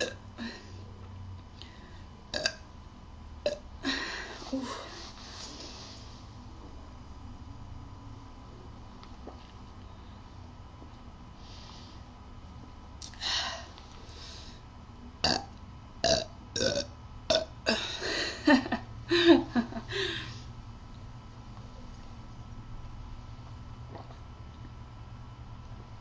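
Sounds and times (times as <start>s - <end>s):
person burping: 0.0s - 0.6s, 2.3s - 2.6s, 15.2s - 18.0s.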